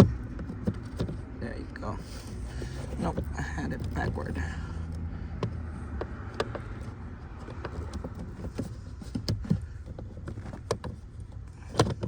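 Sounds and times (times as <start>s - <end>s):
plastic clicks and knocks: 0.0s - 1.3s, 4.9s - 12.0s.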